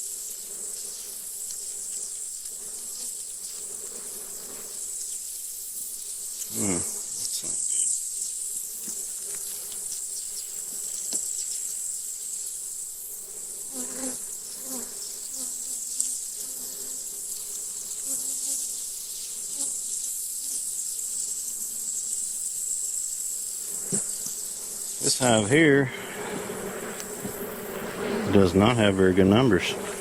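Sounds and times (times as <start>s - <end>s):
high-pitched insect drone: 0.0s - 30.0s
bees buzzing: 13.2s - 30.0s.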